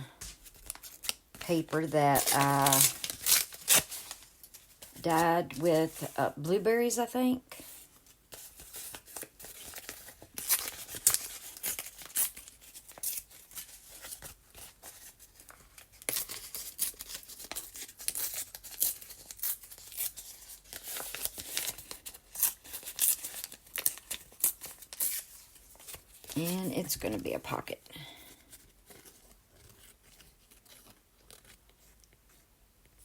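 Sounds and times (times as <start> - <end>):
paper rustling and crinkling: 0.2 - 6.2, 7.6 - 33.0.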